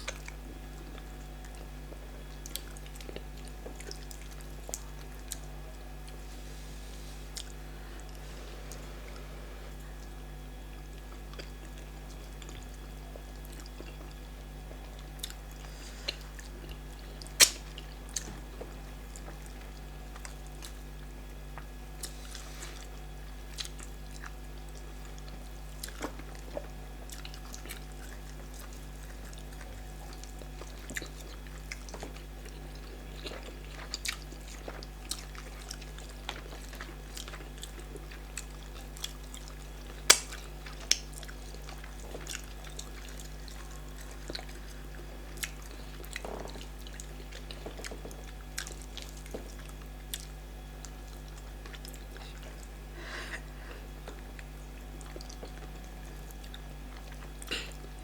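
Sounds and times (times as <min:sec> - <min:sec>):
chewing: 0:00.0 - 0:06.3, 0:07.2 - 0:58.0
low electrical hum: 0:00.0 - 0:58.0
mouth clicks and smacks: 0:17.3 - 0:18.3, 0:40.1 - 0:41.0.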